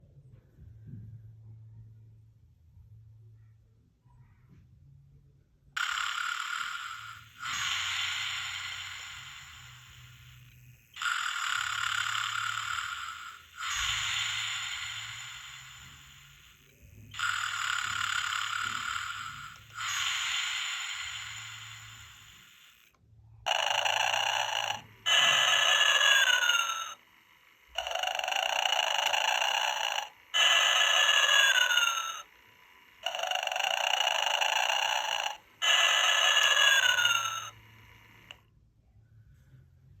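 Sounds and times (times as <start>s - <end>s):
snore with descending whistle: 5.8s - 22.6s, 23.5s - 27.0s, 27.8s - 32.3s, 33.0s - 38.2s
rasping snore through tinny speakers: 5.8s - 22.9s, 23.5s - 27.0s, 27.7s - 32.4s, 33.0s - 38.4s.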